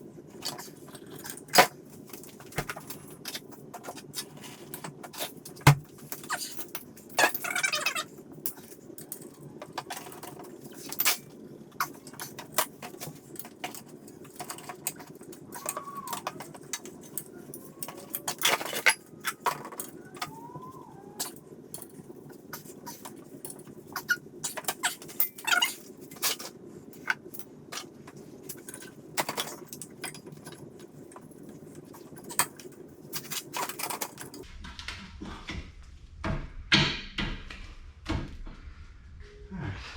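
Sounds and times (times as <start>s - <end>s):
metal tools clinking: 2.3s - 20.3s
steady low hum: 8.1s - 39.9s.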